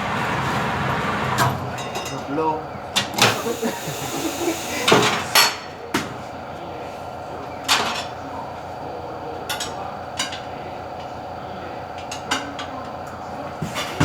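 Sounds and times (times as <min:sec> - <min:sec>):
metal clanks and knocks: 0:00.0 - 0:02.2
steady machine hum: 0:00.0 - 0:07.6.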